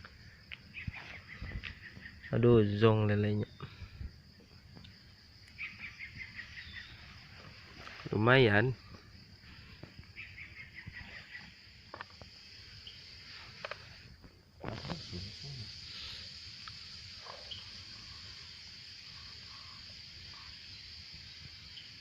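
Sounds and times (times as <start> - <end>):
high insect chorus: 0.0 - 22.0.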